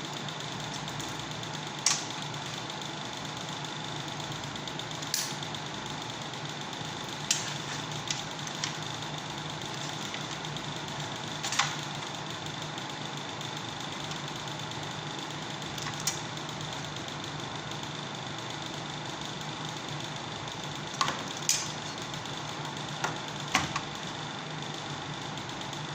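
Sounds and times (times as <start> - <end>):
steady hum with high whine: 0.0 - 25.9.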